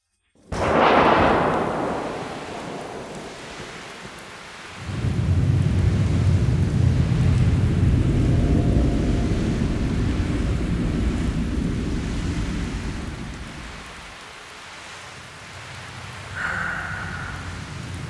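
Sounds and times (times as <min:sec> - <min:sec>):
rolling thunder: 0:00.6 - 0:14.4
steady rain: 0:00.6 - 0:18.0.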